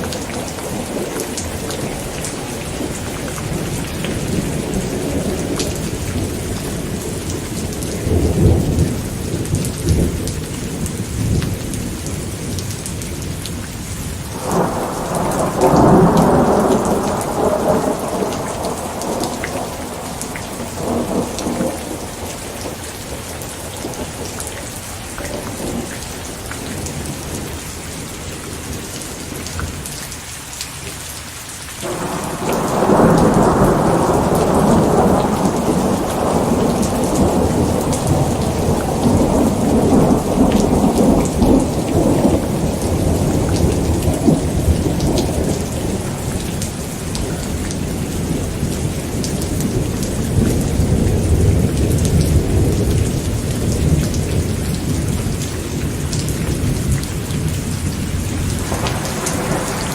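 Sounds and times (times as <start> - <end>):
heavy rain falling: 0.0 - 59.9
rolling thunder: 14.3 - 28.0, 31.8 - 59.9.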